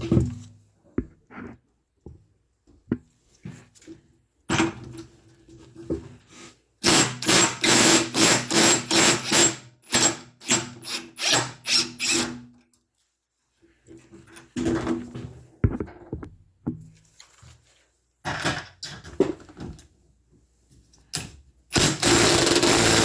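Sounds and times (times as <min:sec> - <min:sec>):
impact driver hammering: 0:21.8 - 0:23.0.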